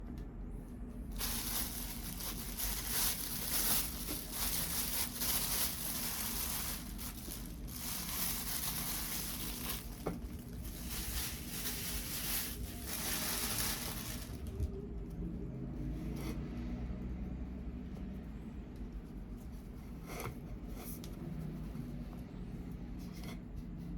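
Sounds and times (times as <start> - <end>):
wrapping crinkling and tearing: 1.0 - 14.8.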